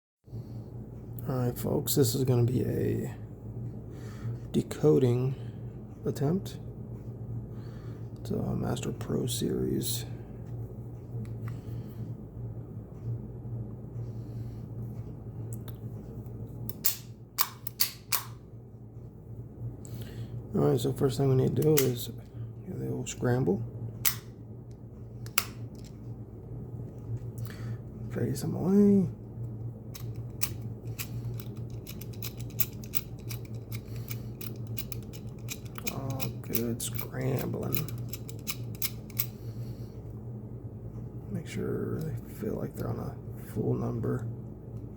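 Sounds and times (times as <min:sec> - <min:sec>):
steady low hum: 0:00.2 - 0:44.9
padlock dials clicking: 0:16.7 - 0:18.4, 0:29.9 - 0:39.4
padlock sharp clicks: 0:16.7 - 0:18.4, 0:24.0 - 0:24.3.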